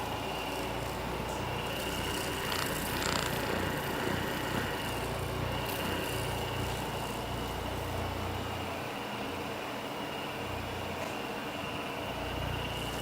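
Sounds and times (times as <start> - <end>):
massage gun buzzing hum: 0.0 - 8.7.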